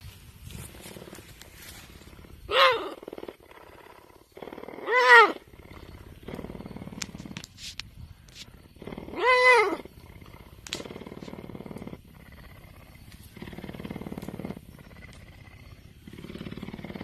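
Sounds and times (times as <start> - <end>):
big cat yowling: 2.5 - 3.0, 4.8 - 5.4, 9.1 - 9.9.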